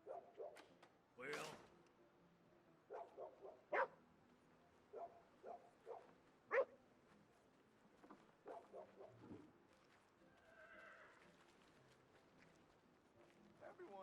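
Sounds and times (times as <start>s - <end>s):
faint short dog barks: 2.9s - 4.0s, 5.0s - 6.8s.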